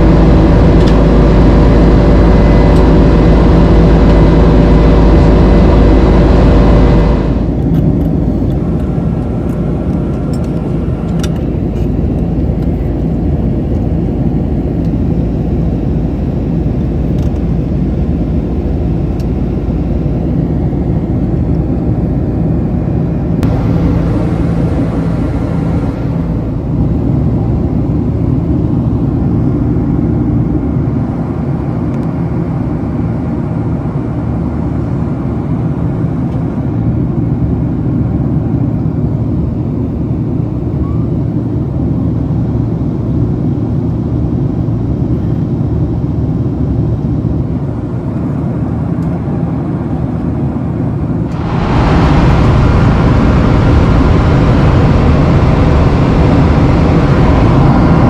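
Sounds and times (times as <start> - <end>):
vehicle engine rumble: 0.0 - 58.0
road rushing noise: 23.3 - 28.2, 51.2 - 58.0.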